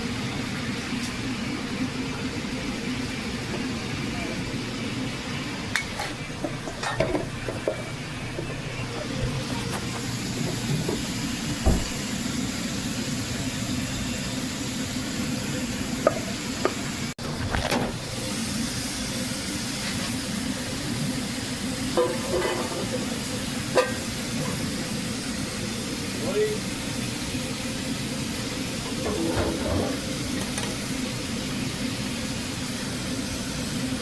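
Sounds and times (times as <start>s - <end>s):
food sizzling in a pan: 18.1s - 34.0s.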